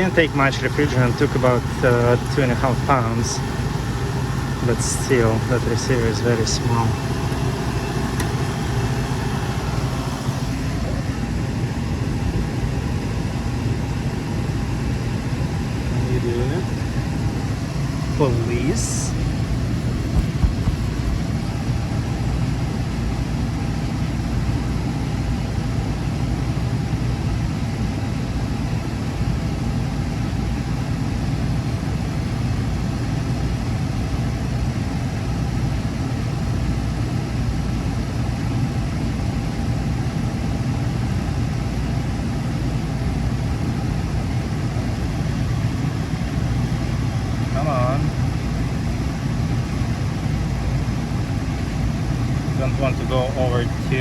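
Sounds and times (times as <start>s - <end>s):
condensing unit humming: 0.0s - 54.0s.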